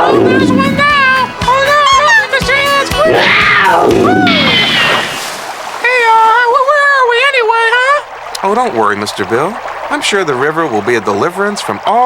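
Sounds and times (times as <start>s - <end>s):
high sinking tone: 0.0s - 8.8s
cartoon whoosh sweeping down: 3.0s - 5.2s.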